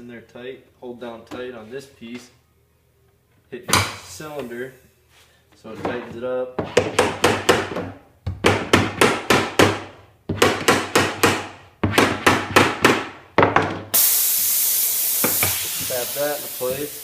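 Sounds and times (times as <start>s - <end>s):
loud steady hiss of air: 13.9s - 17.0s.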